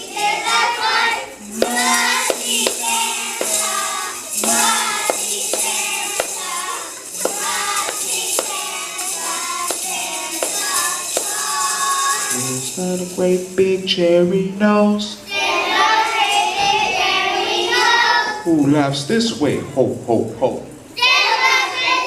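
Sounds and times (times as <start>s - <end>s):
children's choir singing: 0.0s - 13.1s, 15.2s - 18.6s, 21.0s - 22.0s
tambourines on a steady beat: 0.0s - 13.6s
music accompaniment: 0.0s - 14.2s.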